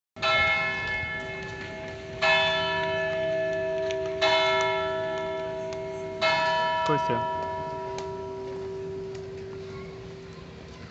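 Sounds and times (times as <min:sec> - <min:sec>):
large bell tolling: 0:00.2 - 0:10.3.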